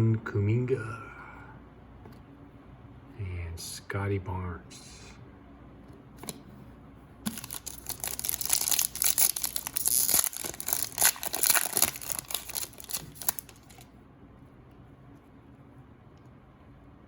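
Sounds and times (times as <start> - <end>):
foil wrapper crinkling: 7.3 - 13.9.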